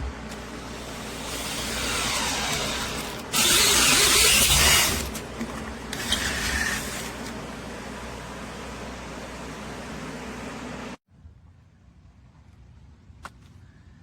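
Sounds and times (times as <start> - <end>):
power drill boring into wood: 0.3 - 7.4.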